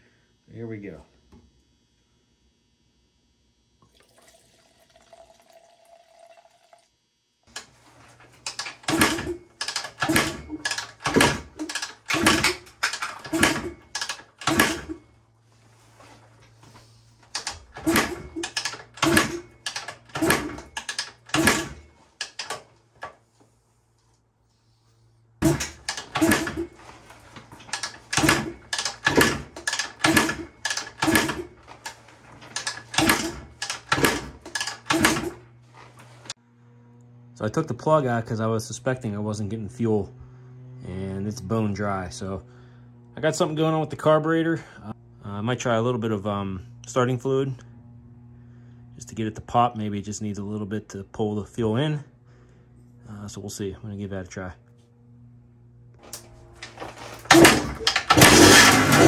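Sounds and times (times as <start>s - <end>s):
motorcycle engine kicked over: 7.5s - 15.1s, 25.4s - 36.3s, 56.0s - 59.0s.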